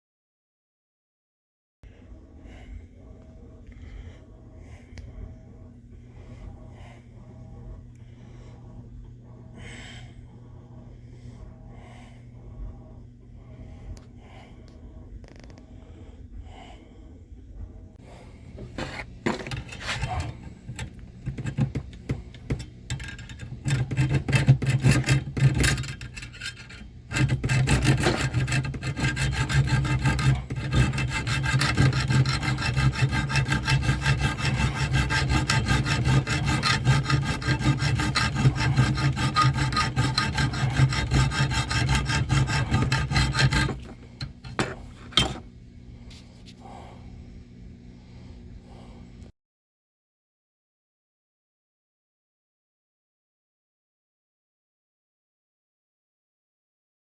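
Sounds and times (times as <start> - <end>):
abrasive tool rubbing on wood: 18.6 - 45.4.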